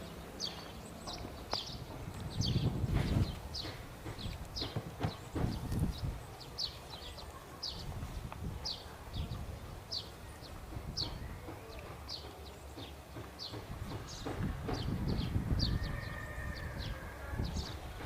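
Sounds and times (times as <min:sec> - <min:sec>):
low thumps: 0:01.0 - 0:06.2.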